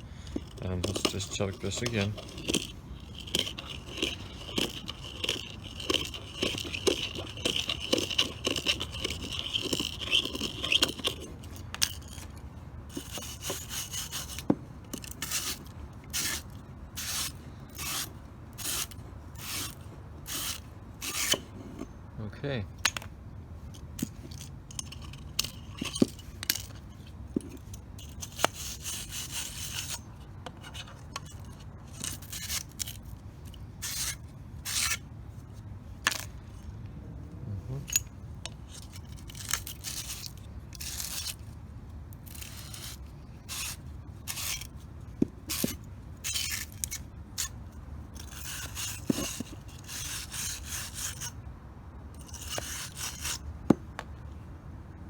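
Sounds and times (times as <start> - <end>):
reamer scraping metal conduit: 0.2 - 21.8.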